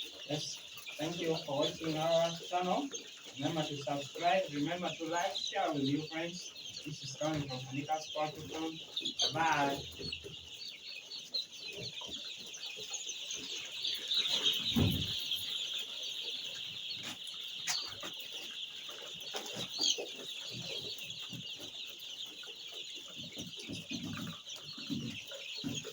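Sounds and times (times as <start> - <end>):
chicks peeping: 0.0 - 25.9
low thump: 14.7 - 15.2.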